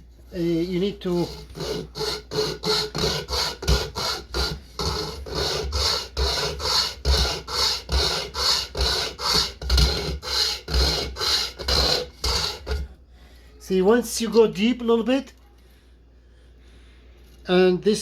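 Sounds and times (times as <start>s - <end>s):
hand chainsaw rasping through wood: 1.0s - 12.9s.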